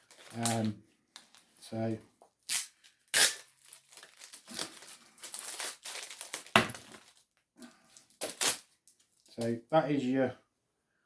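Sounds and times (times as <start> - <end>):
packaging crinkling and rustling: 0.0 - 1.5, 2.4 - 9.3.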